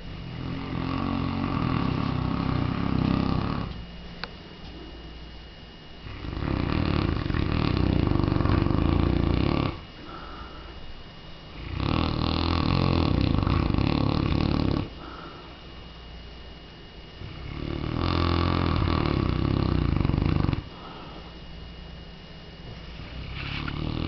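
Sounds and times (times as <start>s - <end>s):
dog snoring loudly: 0.0s - 3.8s, 6.0s - 10.4s, 11.5s - 15.3s, 17.2s - 21.0s, 23.0s - 24.0s.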